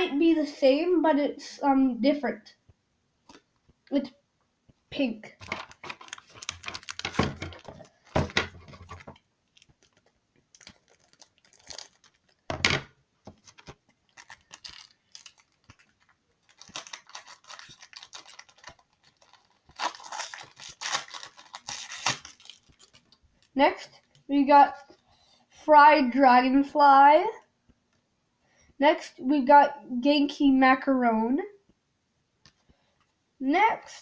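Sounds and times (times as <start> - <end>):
plastic packaging tearing and crinkling: 5.3 - 12.6, 13.3 - 23.5.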